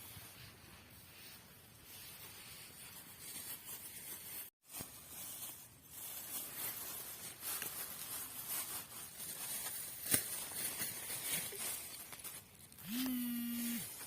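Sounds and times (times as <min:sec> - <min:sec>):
faint rustling and crackling: 0:00.0 - 0:12.8
animal long steady call: 0:12.8 - 0:14.0.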